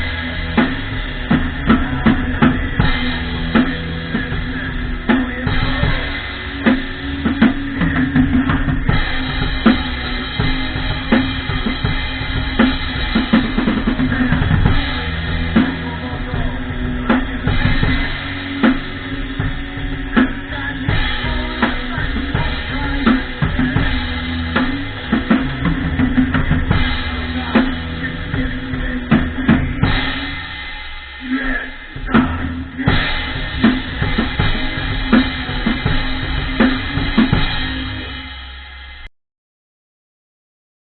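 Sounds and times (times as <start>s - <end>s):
drum kit beat: 0.0s - 39.1s
sustained pitched music line: 0.0s - 39.1s.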